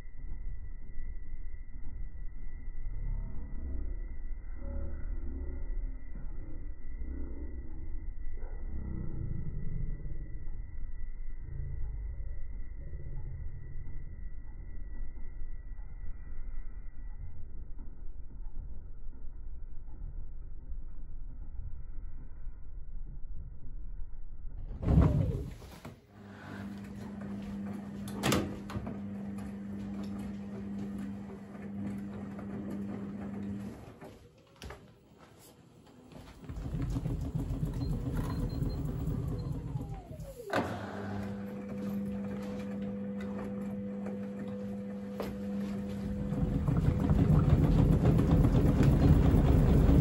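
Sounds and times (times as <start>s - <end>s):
washing machine motor hum: 24.7s - 50.0s.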